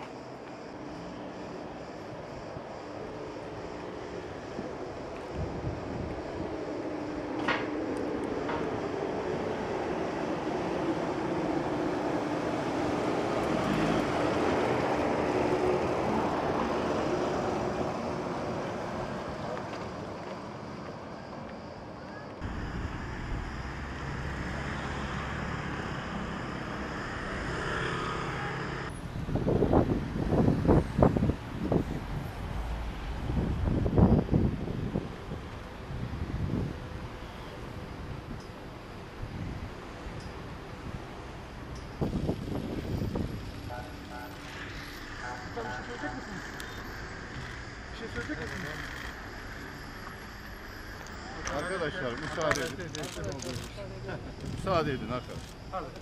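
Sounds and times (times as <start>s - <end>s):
traffic noise: 0.0s - 56.0s
engine passing by: 4.6s - 20.6s, 22.4s - 38.3s.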